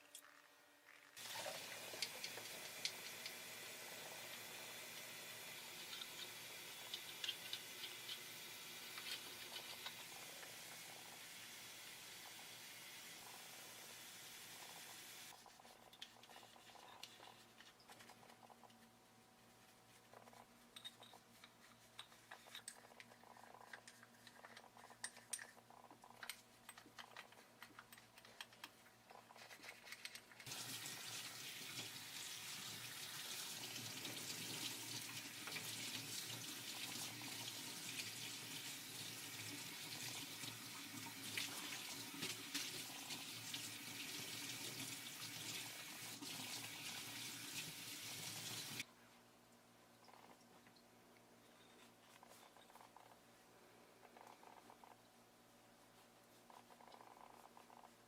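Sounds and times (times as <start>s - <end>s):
water running into a sink: 1.2s - 15.3s, 30.4s - 48.8s.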